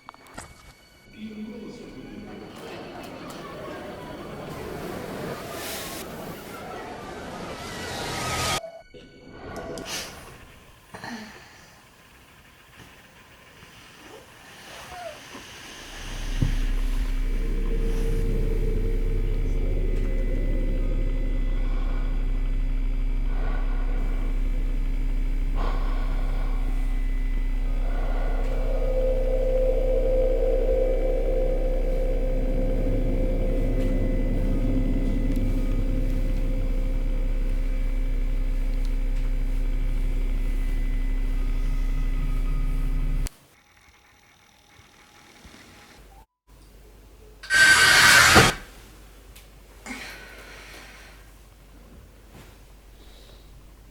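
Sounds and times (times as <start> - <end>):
low rumbling drone: 15.6 - 43.3
held tones: 15.9 - 43.3, 47.4 - 48.6.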